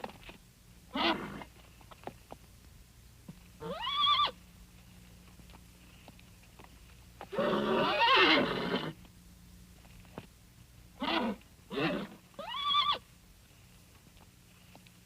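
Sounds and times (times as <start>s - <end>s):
horse whinnying: 0.9s - 1.5s, 3.6s - 4.4s, 7.3s - 9.0s, 11.0s - 13.0s.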